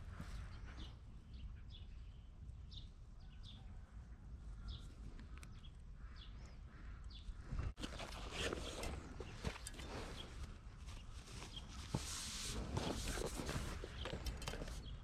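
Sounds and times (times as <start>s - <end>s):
bird chirping: 0.2s - 11.9s.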